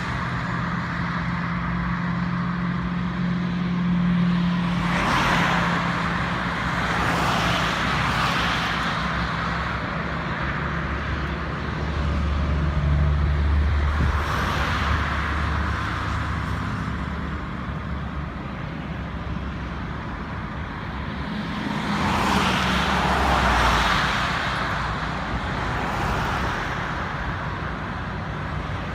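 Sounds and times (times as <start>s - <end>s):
vehicles passing by: 0.0s - 28.9s.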